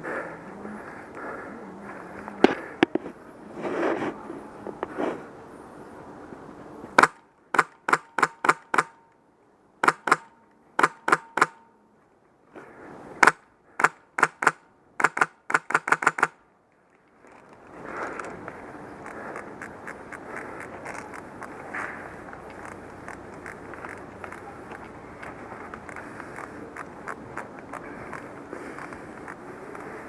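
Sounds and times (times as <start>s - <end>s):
airsoft rifle shots cracking: 7.0s - 9.0s, 9.8s - 11.7s, 13.2s - 16.4s.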